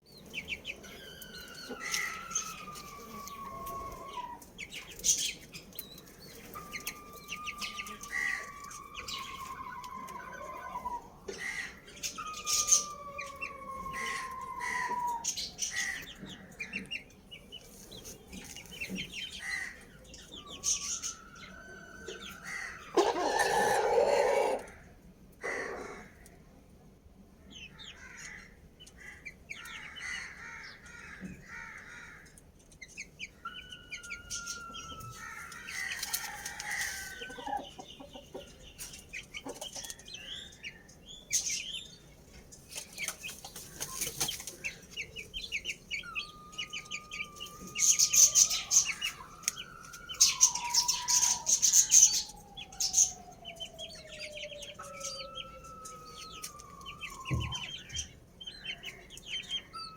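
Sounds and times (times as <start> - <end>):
small birds chirping: 0.0 - 26.6, 27.4 - 59.9
roosters crowing: 0.4 - 16.7, 18.9 - 26.2, 33.3 - 38.7, 43.8 - 59.9.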